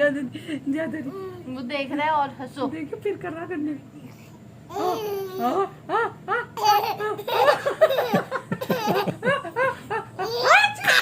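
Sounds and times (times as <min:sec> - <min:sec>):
baby laughing: 0:04.7 - 0:05.6, 0:06.3 - 0:11.0.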